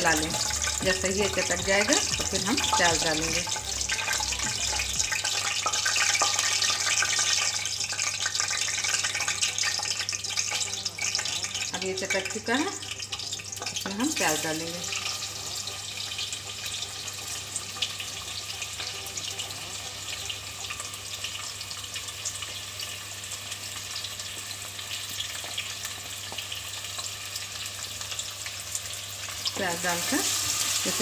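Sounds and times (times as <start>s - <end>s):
onions sizzling in hot oil: 0.0s - 31.0s.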